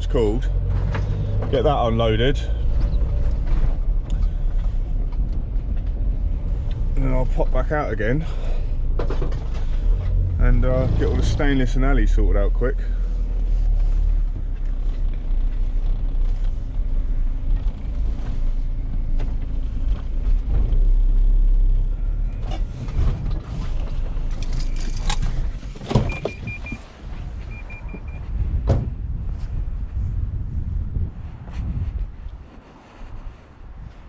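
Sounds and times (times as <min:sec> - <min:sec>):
van engine and road rumble: 0:00.0 - 0:34.0
quick high beeps: 0:26.1 - 0:26.8, 0:27.5 - 0:28.2.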